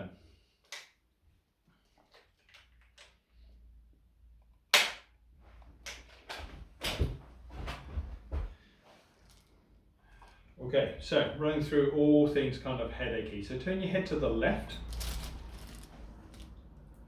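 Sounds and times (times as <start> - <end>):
handling rustling and ticking: 14.8 - 17.0.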